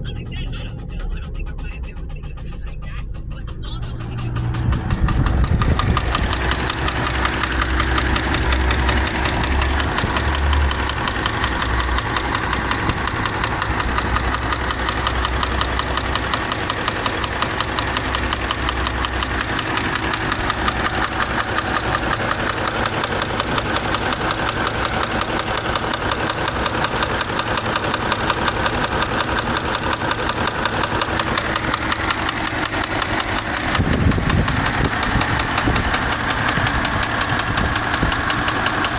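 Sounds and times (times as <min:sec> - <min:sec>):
low rumble: 0:00.0 - 0:13.1
engine idling with rapid knock: 0:00.0 - 0:38.9.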